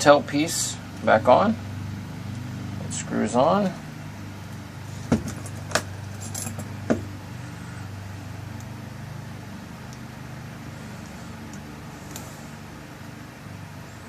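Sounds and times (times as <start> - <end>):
steady low hum: 0.0 - 14.0
light metal rattle: 5.0 - 7.0.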